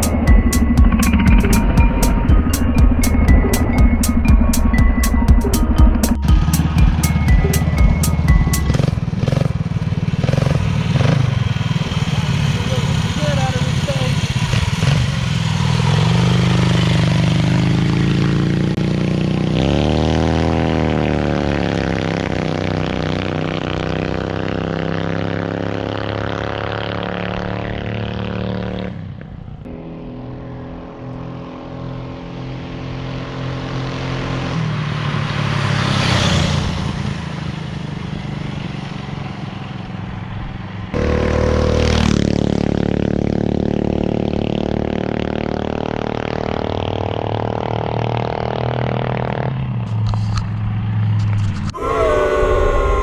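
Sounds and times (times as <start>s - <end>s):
minibike engines running: 8.7s - 16.7s
rush of noise: 51.8s - 53.0s.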